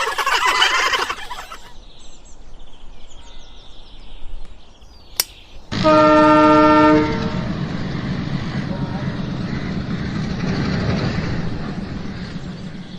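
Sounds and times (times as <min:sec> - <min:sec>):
click: 0:05.2 - 0:05.4
low engine rumble: 0:05.2 - 0:12.9
vehicle horn blast: 0:05.7 - 0:07.5.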